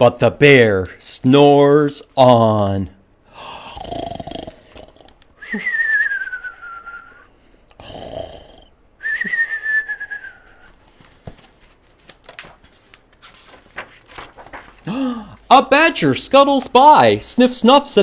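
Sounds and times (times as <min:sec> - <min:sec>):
man imitating snoring: 0:03.4 - 0:05.1, 0:07.7 - 0:08.7.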